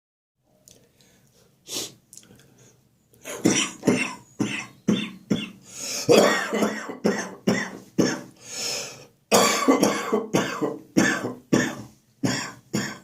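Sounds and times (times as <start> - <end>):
faint breathing: 0.7 - 3.4, 5.6 - 6.1, 8.3 - 9.2
person coughing: 3.3 - 8.3, 9.3 - 13.0.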